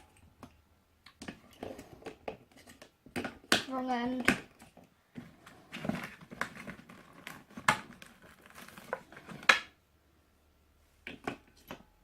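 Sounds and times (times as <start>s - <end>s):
rustling: 4.6s - 9.6s.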